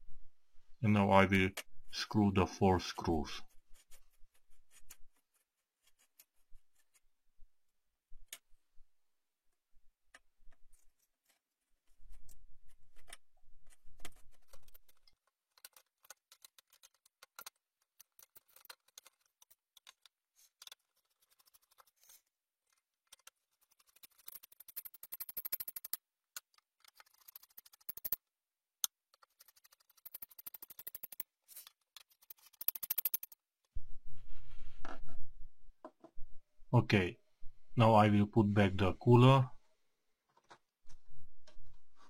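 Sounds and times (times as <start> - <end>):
screws clicking: 32.0 - 33.4.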